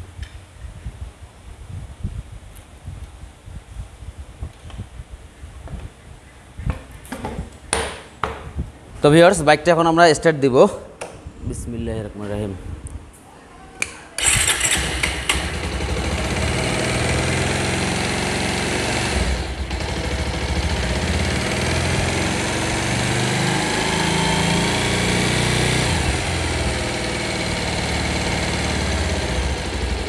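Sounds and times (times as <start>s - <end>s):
motorcycle engine running: 14.2s - 30.0s.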